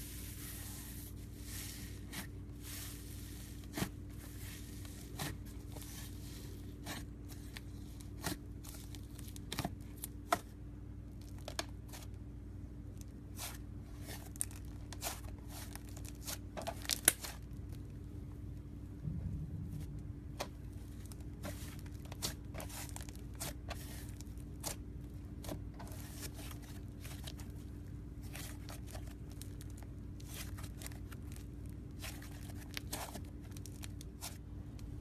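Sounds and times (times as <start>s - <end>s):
steady low hum: 0.0s - 35.0s.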